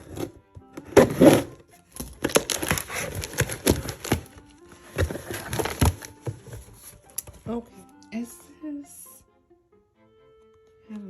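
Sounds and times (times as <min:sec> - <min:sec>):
packaging rustling: 0:00.9 - 0:07.5
packaging crinkling: 0:01.0 - 0:07.2.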